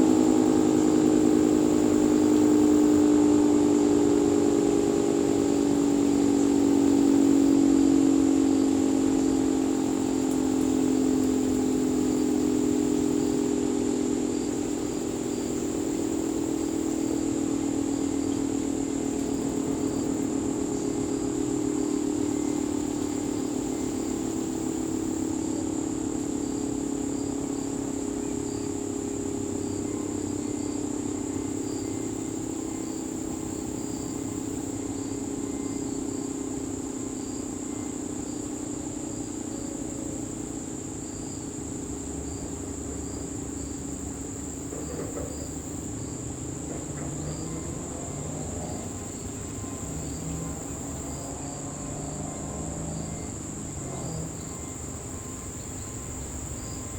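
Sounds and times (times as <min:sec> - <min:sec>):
crickets chirping: 0:00.0 - 0:56.9
dual-tone warning siren: 0:44.7 - 0:56.9.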